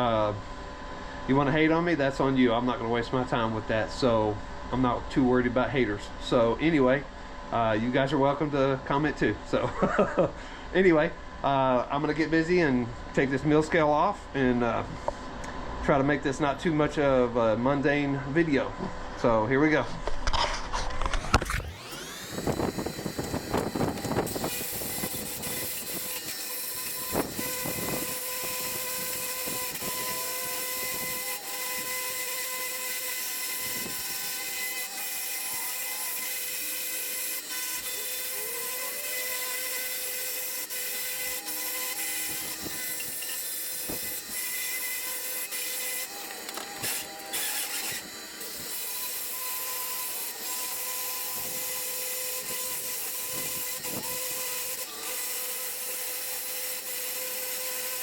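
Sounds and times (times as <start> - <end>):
angle grinder grinding steel: 20.3 - 58.0.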